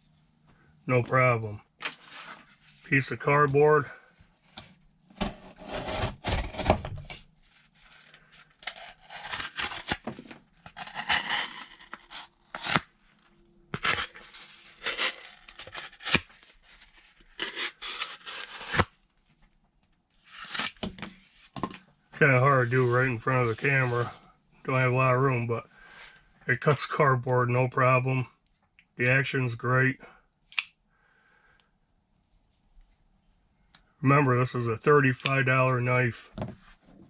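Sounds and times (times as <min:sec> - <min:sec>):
knife slicing cardboard: 0:05.1 - 0:07.1, 0:08.6 - 0:12.9, 0:13.8 - 0:18.9.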